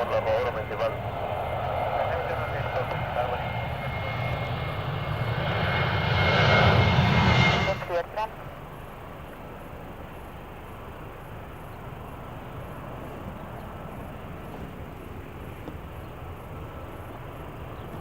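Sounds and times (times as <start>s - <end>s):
airport ambience rumble and hiss: 0.0s - 5.4s.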